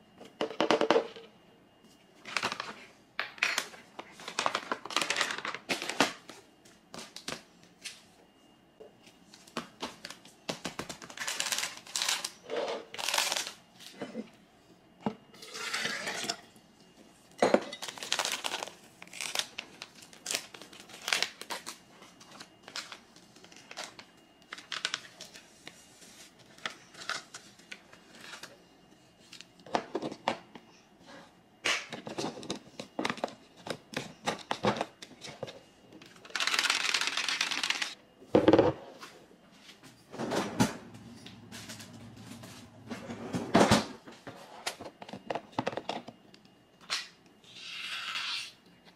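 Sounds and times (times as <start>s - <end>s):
packaging rustling and crinkling: 9.4s - 13.6s, 17.7s - 28.5s.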